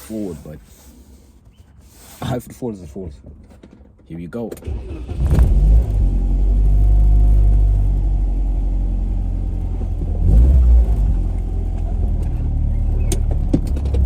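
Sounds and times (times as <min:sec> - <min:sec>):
car engine accelerating: 0:04.8 - 0:14.0.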